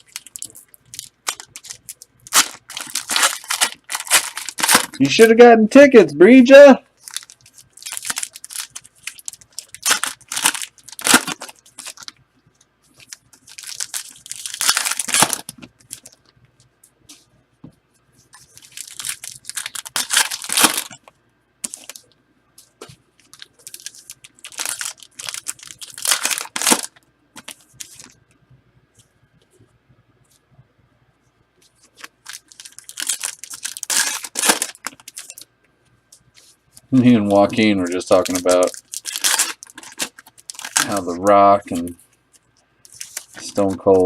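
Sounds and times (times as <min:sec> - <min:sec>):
wrappers tearing and crinkling: 0:00.0 - 0:05.2, 0:07.0 - 0:12.2, 0:12.9 - 0:16.3, 0:18.3 - 0:22.1, 0:23.2 - 0:28.2, 0:31.8 - 0:35.5, 0:37.0 - 0:42.0, 0:42.8 - 0:44.0.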